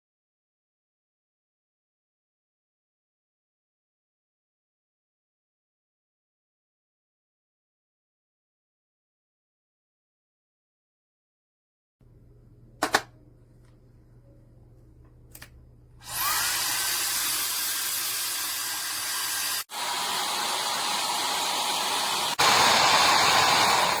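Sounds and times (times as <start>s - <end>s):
hair dryer switch click: 12.8s - 13.1s
hair dryer blowing air: 16.0s - 24.0s.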